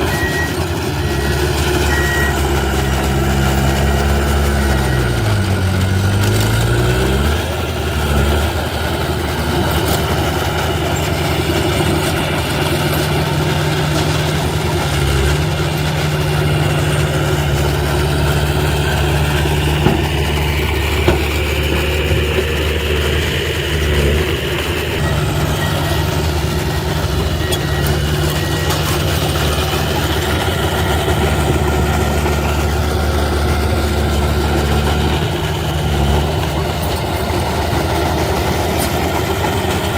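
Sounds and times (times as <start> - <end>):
diesel engine running: 0.0 - 39.9
sharp knocks: 19.6 - 22.6.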